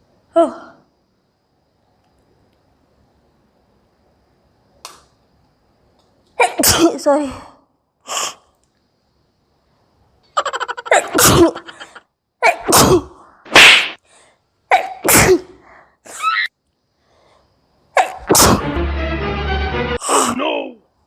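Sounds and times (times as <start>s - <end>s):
woman sneezing: 6.4s - 7.5s, 10.9s - 11.6s, 12.4s - 13.8s, 14.7s - 16.4s, 18.0s - 18.6s.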